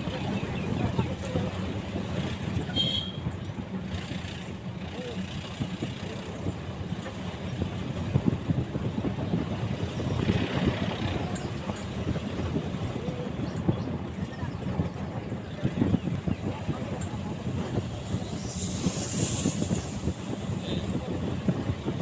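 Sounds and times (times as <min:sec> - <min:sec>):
motor vehicle rumbling: 0:00.0 - 0:22.0.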